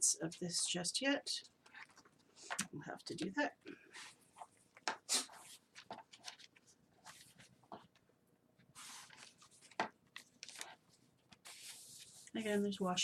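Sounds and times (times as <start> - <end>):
paper pages rustling: 1.5 - 2.3, 3.9 - 8.0, 8.6 - 12.8.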